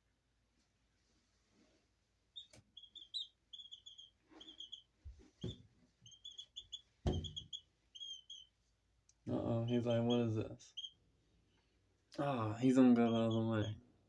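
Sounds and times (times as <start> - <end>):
baby chick peeping: 2.3 - 8.6, 9.2 - 11.0
knocks: 7.0 - 7.4.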